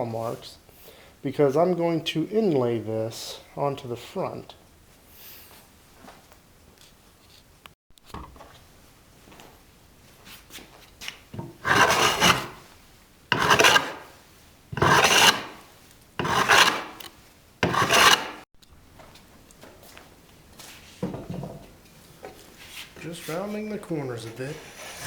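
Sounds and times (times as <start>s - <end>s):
hand plane shaving wood: 11.5s - 12.6s, 13.3s - 14.1s, 14.8s - 15.6s, 16.2s - 18.4s, 24.5s - 25.0s.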